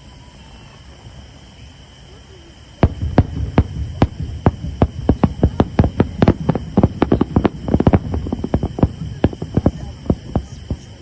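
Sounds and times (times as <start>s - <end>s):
fireworks bursting: 2.8s - 11.0s.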